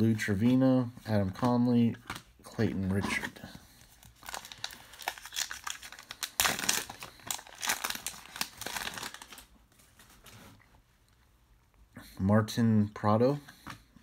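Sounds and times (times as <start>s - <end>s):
wrapper tearing and crinkling: 4.0s - 9.6s.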